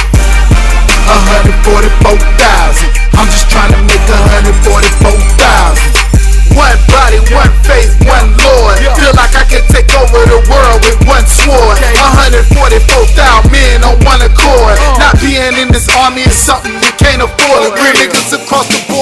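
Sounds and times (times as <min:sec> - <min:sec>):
kick drum: 0:00.0 - 0:00.8, 0:06.1 - 0:08.5, 0:09.1 - 0:11.4, 0:15.2 - 0:17.3
bending melody line: 0:00.0 - 0:19.0
heavy bass line: 0:00.0 - 0:19.0
hip hop music: 0:00.0 - 0:19.0.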